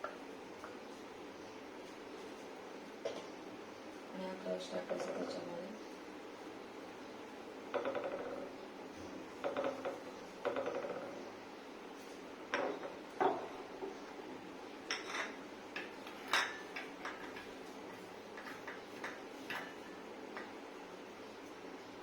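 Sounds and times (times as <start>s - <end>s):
spoon clinking against dish: 14.9s - 17.5s.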